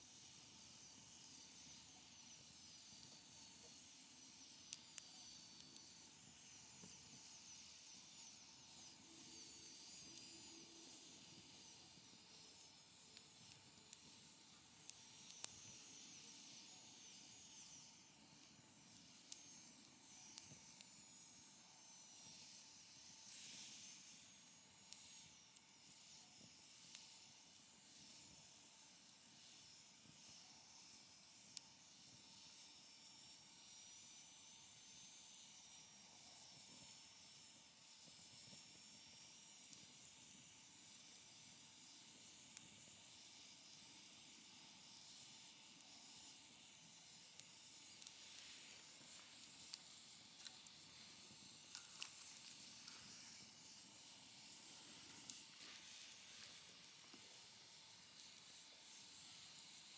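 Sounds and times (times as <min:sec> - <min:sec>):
wood fire crackling: 0:43.6 - 0:59.9.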